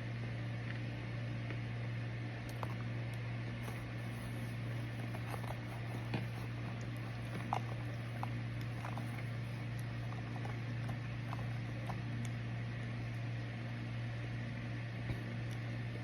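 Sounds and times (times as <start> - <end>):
microwave oven humming: 0.0 - 16.0.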